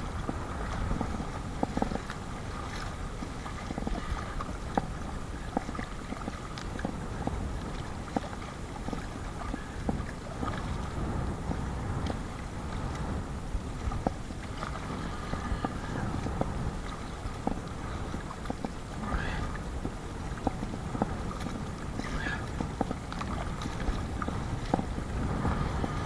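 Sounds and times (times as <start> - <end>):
water slapping against kayak hull: 0.0 - 26.0
wind rushing: 10.0 - 26.0.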